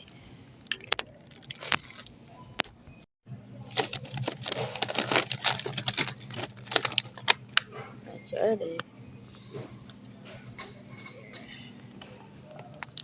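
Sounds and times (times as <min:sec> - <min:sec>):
packaging crinkling and rustling: 0:00.7 - 0:02.7, 0:03.6 - 0:07.8.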